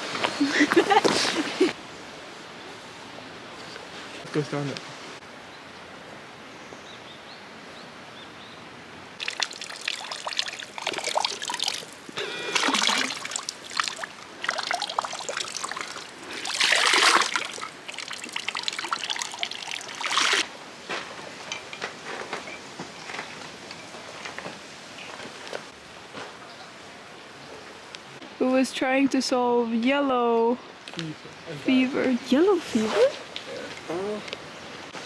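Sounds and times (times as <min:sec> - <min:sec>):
water trickling and splashing: 0:09.2 - 0:21.0.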